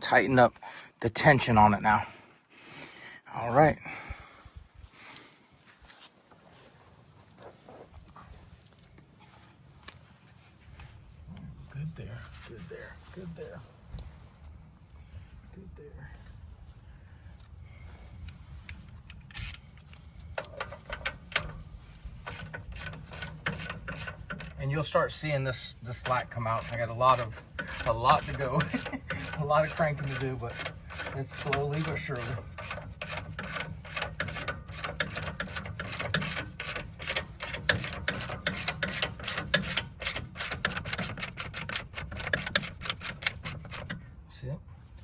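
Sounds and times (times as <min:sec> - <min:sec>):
sharp metal clicks: 0:19.0 - 0:25.3, 0:25.9 - 0:44.1.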